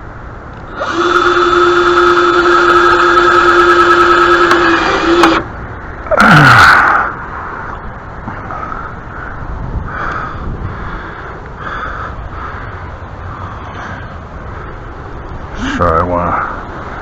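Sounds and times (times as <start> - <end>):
loud noise with falling tone: 0.7 - 8.0.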